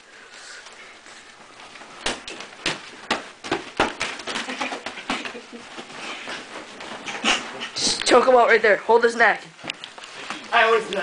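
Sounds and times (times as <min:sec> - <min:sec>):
punches thudding and slapping: 0:02.0 - 0:07.3.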